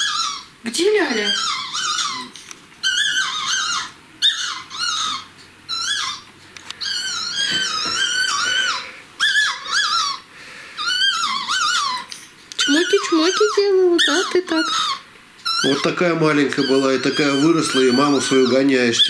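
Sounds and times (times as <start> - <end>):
puppy squeaking: 0.0 - 19.0.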